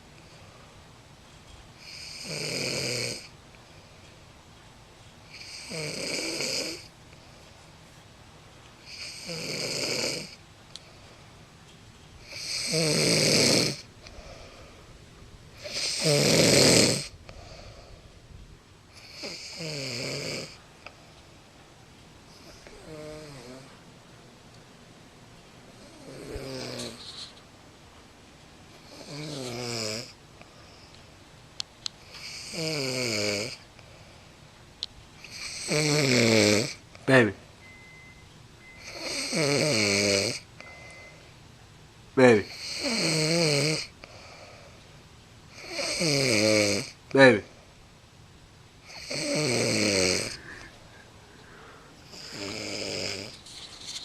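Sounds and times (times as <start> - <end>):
woman snoring: 1.8 - 3.3, 5.3 - 6.9, 8.8 - 10.4, 12.2 - 14.5, 15.6 - 17.2, 19.0 - 20.6, 22.4 - 23.8, 25.8 - 27.0, 28.8 - 30.2, 32.1 - 33.6, 35.2 - 36.8, 38.8 - 41.2, 42.5 - 44.0, 45.5 - 47.0, 48.9 - 50.8, 51.5 - 53.4.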